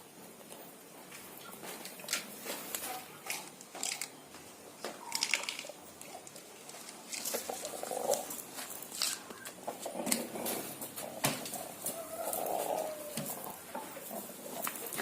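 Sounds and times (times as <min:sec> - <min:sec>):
chicken pecking: 0:00.3 - 0:15.0.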